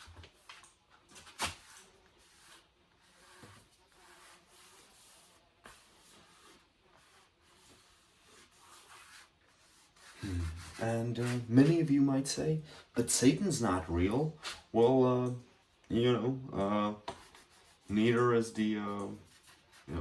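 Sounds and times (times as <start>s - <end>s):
paintbrush strokes scraping: 0.0s - 12.1s, 17.1s - 20.0s.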